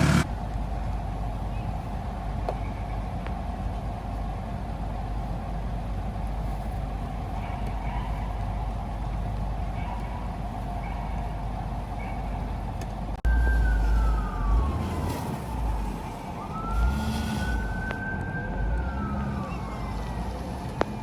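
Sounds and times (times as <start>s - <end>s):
vehicle rumble: 0.0s - 21.0s
emergency siren wailing: 13.2s - 21.0s.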